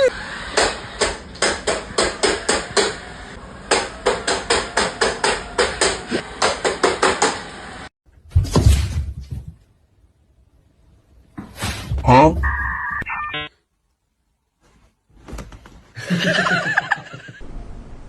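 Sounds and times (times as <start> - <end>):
rapid sharp knocks: 0.6 - 3.1, 3.7 - 7.4
loud thump: 8.3 - 9.6.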